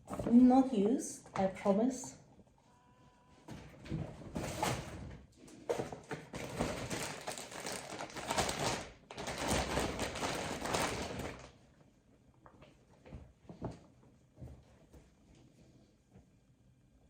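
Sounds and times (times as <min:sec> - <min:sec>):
packaging crinkling and rustling: 0:05.7 - 0:11.6.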